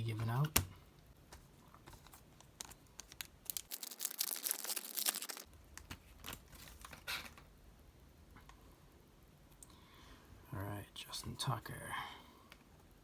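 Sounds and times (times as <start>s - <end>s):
foil wrapper tearing: 1.9s - 7.4s.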